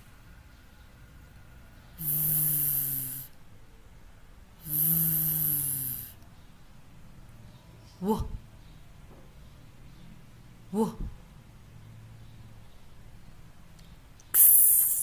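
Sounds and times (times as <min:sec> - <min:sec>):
person making buzzing v sound: 0:02.0 - 0:03.3, 0:04.6 - 0:06.2, 0:14.4 - 0:15.0.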